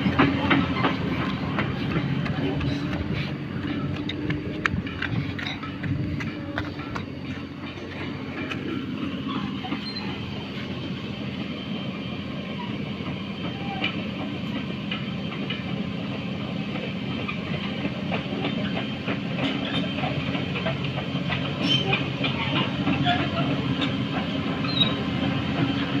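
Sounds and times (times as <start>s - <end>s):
excavator diesel engine running: 0.0s - 26.0s
metallic clicks and squeaks: 24.6s - 25.0s.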